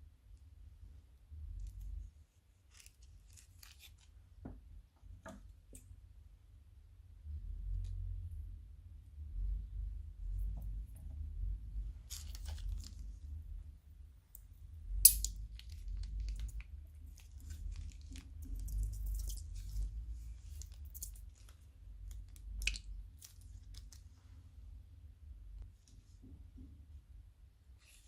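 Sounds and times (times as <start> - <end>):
crunchy slime crackling: 12.0 - 13.4, 15.0 - 24.0.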